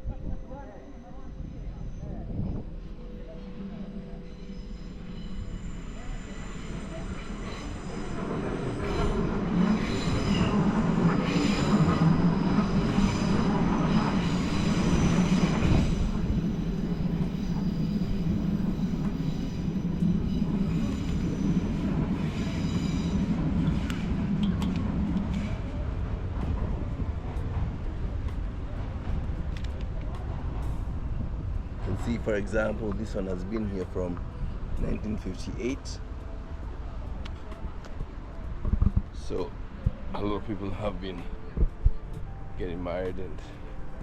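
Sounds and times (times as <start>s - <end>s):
train crossing steel bridge: 0.0s - 44.0s
squealing train wheels: 0.1s - 26.2s.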